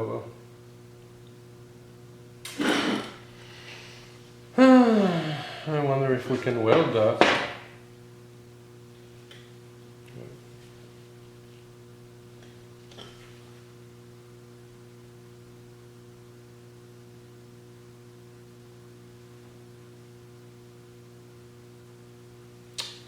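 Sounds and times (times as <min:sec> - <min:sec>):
electrical mains hum: 0:00.0 - 0:23.0
sharp click: 0:22.8 - 0:23.0.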